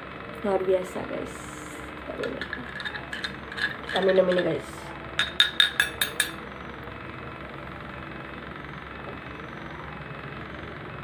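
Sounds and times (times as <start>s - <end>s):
spoon clinking in a cup: 2.2s - 4.6s, 5.2s - 6.4s.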